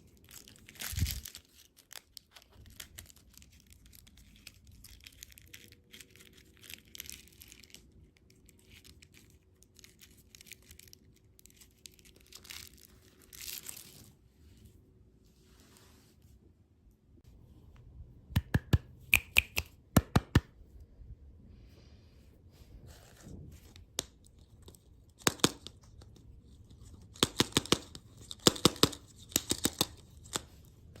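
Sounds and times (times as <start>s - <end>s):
candy packaging crinkling: 0.0s - 14.3s, 23.6s - 31.0s.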